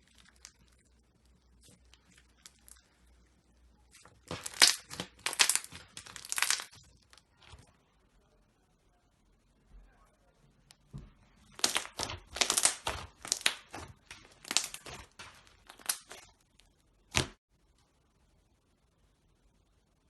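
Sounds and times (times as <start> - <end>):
slime squeezed by hand crackling: 3.9 - 7.2, 11.5 - 16.4.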